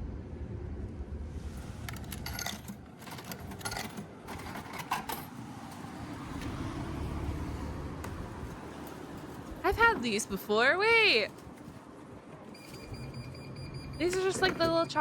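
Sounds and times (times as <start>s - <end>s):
low background rumble: 0.0s - 4.4s
coins clinking in vending machine: 1.9s - 5.4s.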